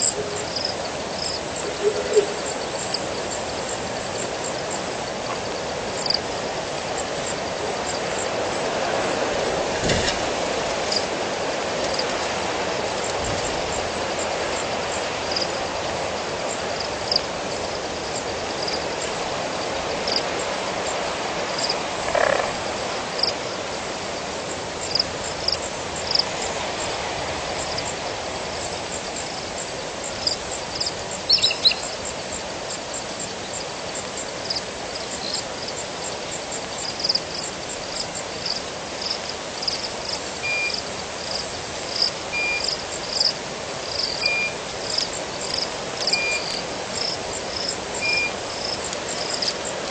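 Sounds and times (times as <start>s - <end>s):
frogs chirping: 0.0s - 9.3s, 11.8s - 12.1s, 12.9s - 49.9s
steady background noise: 0.0s - 49.9s.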